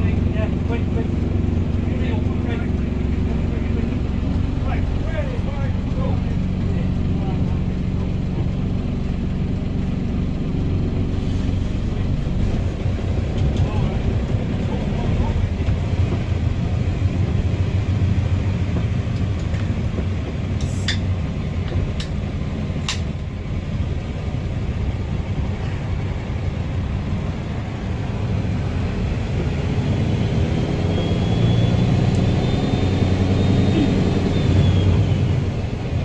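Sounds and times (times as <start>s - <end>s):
bus engine running: 0.0s - 36.0s
faint high whistle: 30.8s - 35.3s.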